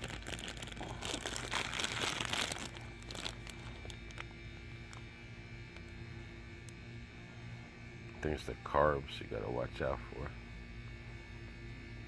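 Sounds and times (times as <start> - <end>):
crinkling and rustling: 0.0 - 4.3
faint low hum: 0.0 - 12.0.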